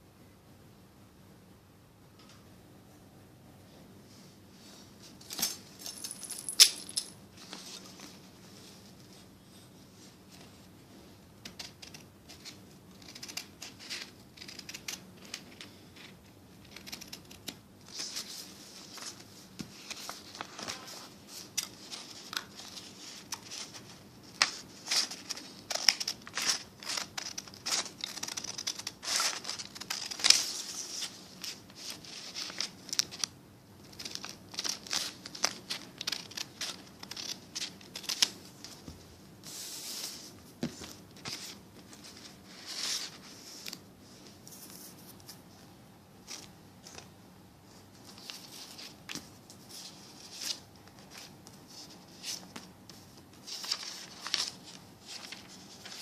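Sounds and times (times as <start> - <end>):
scissors snipping paper: 11.4 - 15.5, 16.6 - 17.6, 24.3 - 30.5, 32.2 - 38.3
paper crinkling: 16.6 - 38.9, 48.0 - 56.0.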